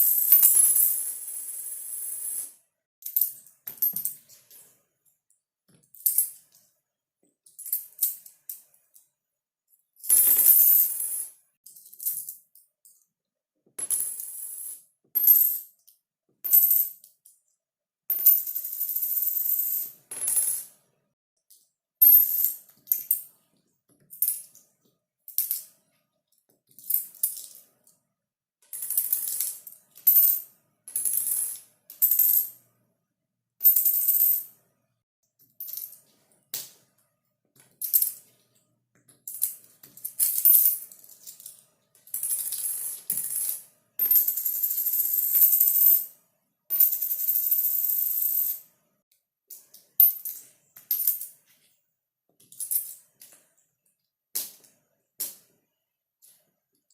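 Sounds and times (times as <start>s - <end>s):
metal coins dropping and clinking: 26.8s - 27.6s, 28.7s - 32.6s, 39.3s - 46.0s, 50.0s - 51.3s, 52.5s - 53.4s.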